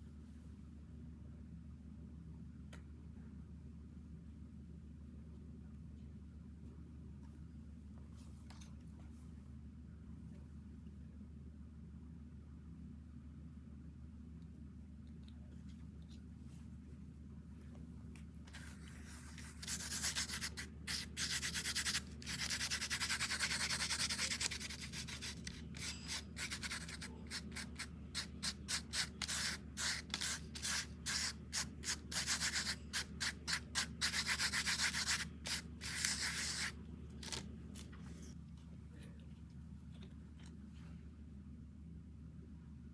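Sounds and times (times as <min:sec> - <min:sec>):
steady low hum: 0:00.0 - 0:42.9
rubbing against a surface: 0:18.5 - 0:37.4.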